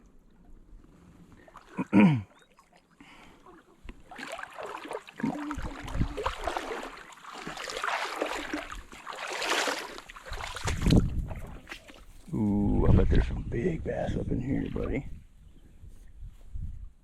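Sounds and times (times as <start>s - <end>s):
water splashing around wading legs: 1.3s - 12.3s.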